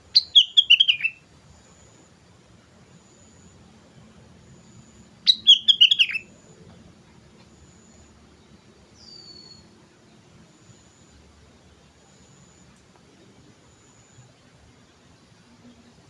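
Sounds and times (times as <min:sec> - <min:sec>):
bird whistling song phrase: 0:00.1 - 0:01.2, 0:05.3 - 0:06.3, 0:09.0 - 0:09.7.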